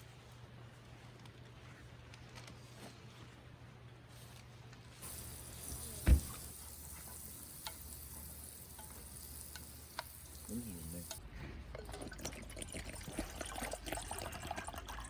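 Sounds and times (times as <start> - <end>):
food sizzling in a hot pan: 5.0 - 11.2.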